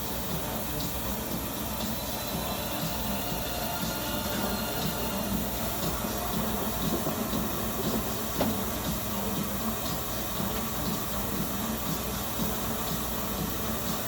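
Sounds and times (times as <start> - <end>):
washing machine hiss: 0.0 - 14.0
low thumps from drum load: 6.4 - 9.5.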